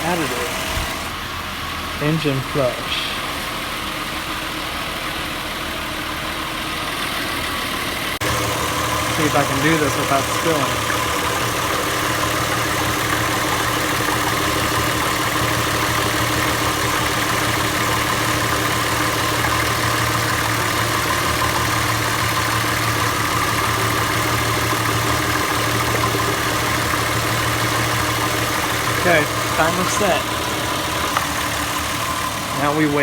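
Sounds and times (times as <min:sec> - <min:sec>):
car engine idling: 0:00.0 - 0:33.0.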